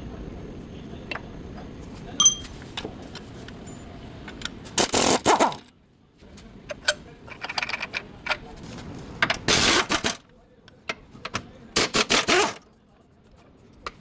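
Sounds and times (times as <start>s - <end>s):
sharp clicks and clinks: 2.2s - 2.6s.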